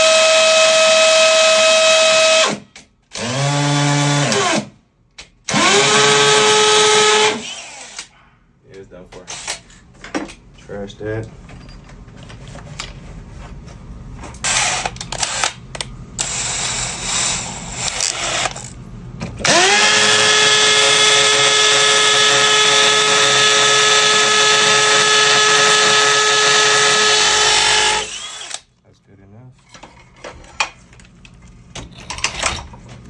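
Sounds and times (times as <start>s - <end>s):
power drill drilling into brick: 0.0s - 2.6s, 3.2s - 4.7s, 5.5s - 8.1s, 14.5s - 15.4s, 16.2s - 18.6s, 19.4s - 28.6s.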